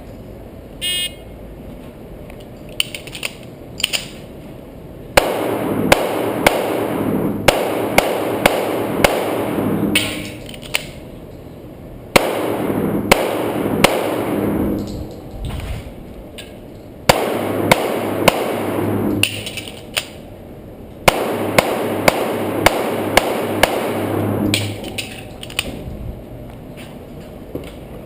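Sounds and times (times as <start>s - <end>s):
pistol shots: 5.2s - 10.4s, 12.1s - 15.0s, 17.1s - 19.6s, 21.0s - 25.3s.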